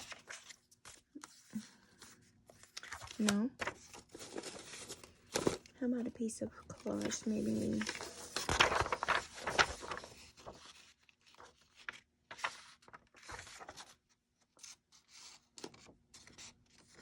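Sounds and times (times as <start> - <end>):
paper rustling and crinkling: 0.0 - 17.0.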